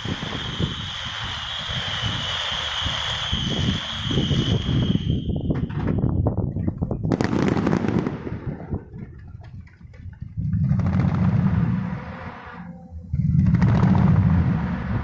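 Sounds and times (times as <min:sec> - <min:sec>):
fireworks bangs and crackles: 0:00.0 - 0:12.2, 0:13.3 - 0:15.0
loud low rumble: 0:10.3 - 0:15.0.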